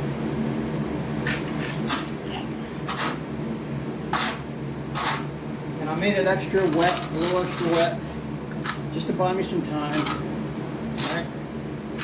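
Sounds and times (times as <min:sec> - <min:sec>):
steady low hum: 0:00.0 - 0:12.0
trowel scraping wet mortar: 0:04.1 - 0:05.3, 0:06.6 - 0:07.9, 0:11.0 - 0:11.3.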